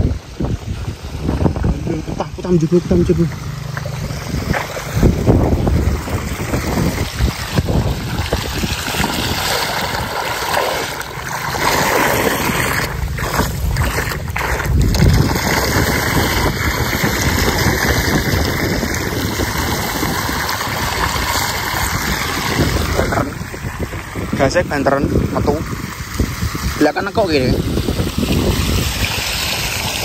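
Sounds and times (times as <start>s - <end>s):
water gushing from hose: 0.0s - 30.0s
wind buffeting microphone: 0.0s - 30.0s
small pump engine running: 0.1s - 23.4s.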